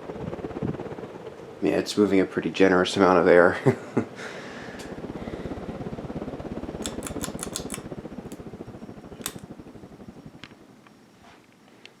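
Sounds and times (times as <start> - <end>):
ceiling fan pulsing: 4.6 - 10.8
sharp clicks: 6.8 - 8.4, 9.2 - 9.5.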